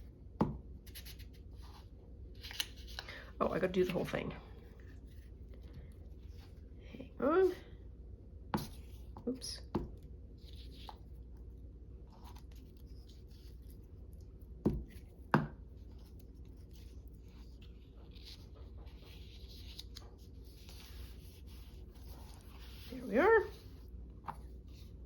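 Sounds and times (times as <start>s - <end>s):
paper rustling and scratching: 0.8s - 3.0s, 15.8s - 25.0s.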